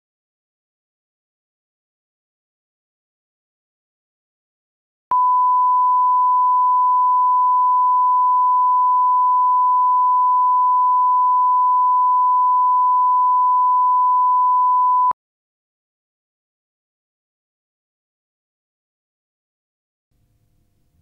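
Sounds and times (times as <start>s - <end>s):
sine test tone: 5.1s - 15.2s.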